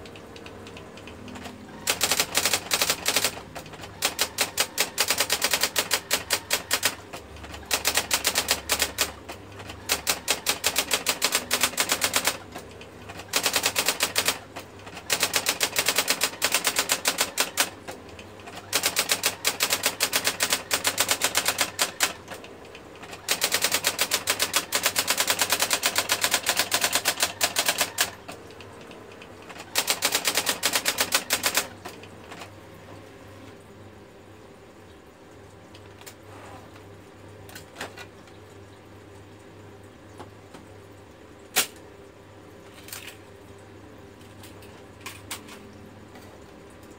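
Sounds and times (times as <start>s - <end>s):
typewriter type strikes: 0.0s - 32.5s, 41.5s - 41.8s.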